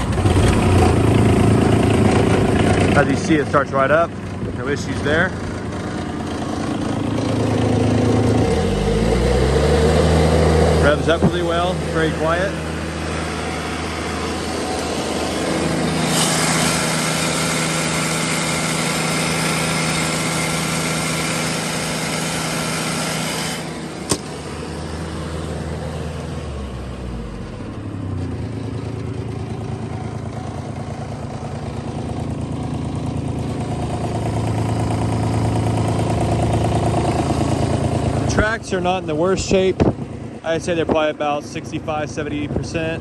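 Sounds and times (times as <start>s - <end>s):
diesel excavator engine revving: 0.0s - 43.0s
sharp click: 24.1s - 24.4s.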